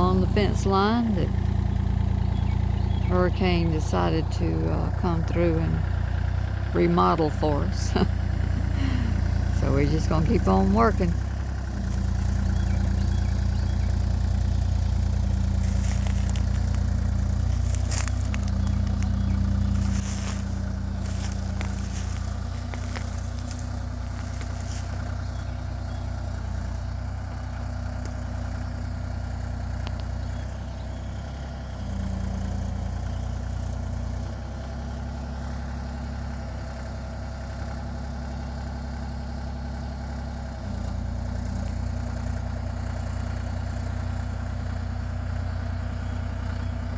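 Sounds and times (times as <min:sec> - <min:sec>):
excavator diesel engine running: 0:00.0 - 0:46.9.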